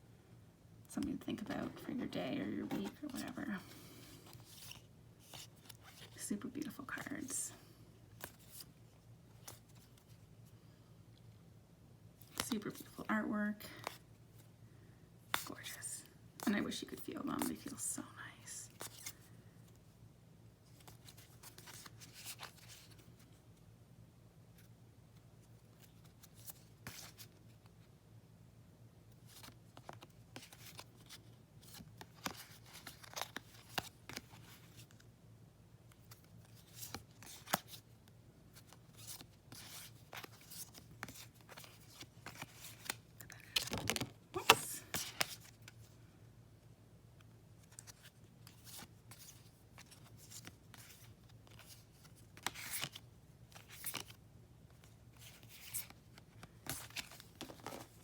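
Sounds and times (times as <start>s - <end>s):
cards sliding and rustling: 2.6s - 6.2s, 8.1s - 10.2s, 18.7s - 19.3s, 20.7s - 23.3s, 25.8s - 27.6s, 29.2s - 35.0s, 35.9s - 37.8s, 38.5s - 46.0s, 47.6s - 58.0s.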